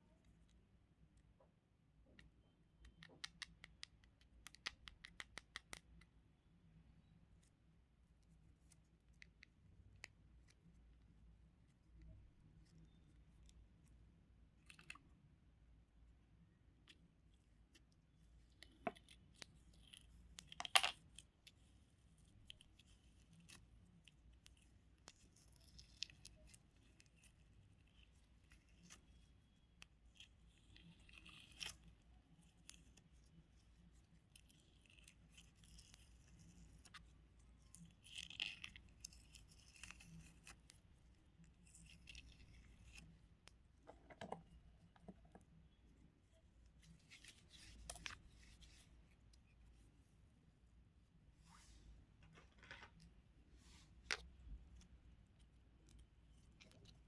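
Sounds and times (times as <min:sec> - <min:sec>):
small clicks and taps: 0:01.4 - 0:06.1.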